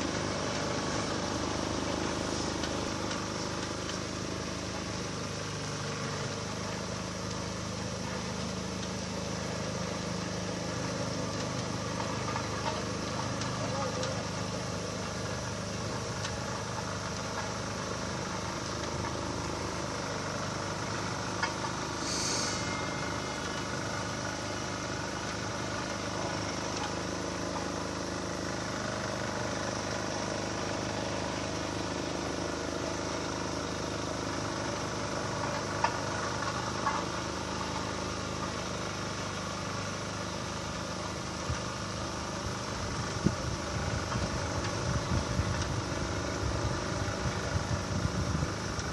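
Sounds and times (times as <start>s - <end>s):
vehicle engine running: 0.0s - 48.9s
short hiss: 22.0s - 23.2s.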